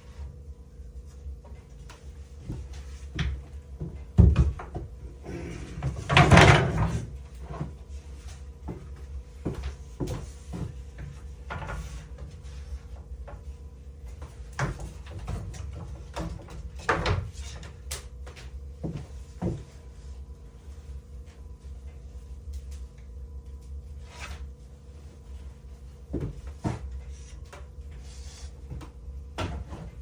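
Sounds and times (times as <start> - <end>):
wood knocks and thuds: 2.5 - 5.0.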